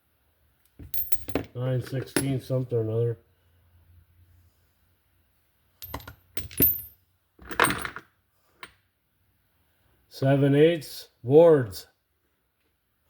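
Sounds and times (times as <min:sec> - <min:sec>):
metal sockets clinking: 0:05.8 - 0:08.0.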